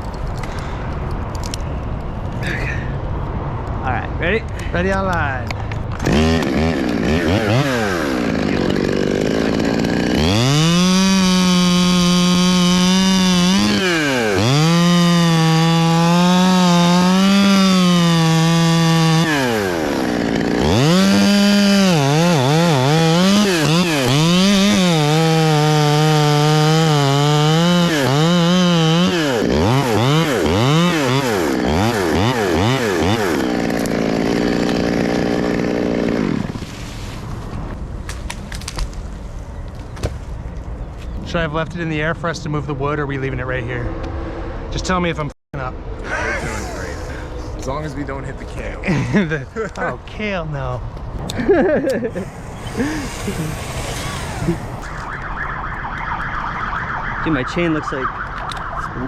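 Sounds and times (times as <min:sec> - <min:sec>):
chainsaw cutting hard wood: 0:06.0 - 0:37.2, 0:46.0 - 0:47.6, 0:51.2 - 0:55.1.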